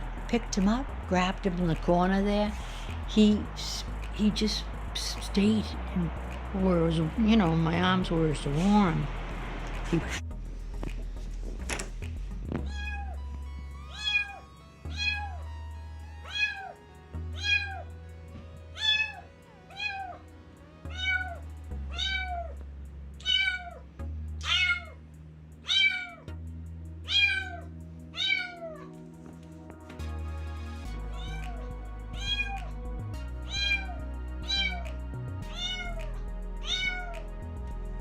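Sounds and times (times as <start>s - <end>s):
kitten meowing: 12.6s - 13.2s, 13.9s - 15.4s, 16.2s - 16.8s, 17.4s - 17.8s, 18.8s - 20.2s, 20.9s - 22.6s, 23.2s - 23.8s, 24.4s - 25.0s, 25.6s - 26.3s, 27.1s - 28.9s, 31.1s - 32.7s, 33.5s - 34.9s, 35.5s - 37.2s.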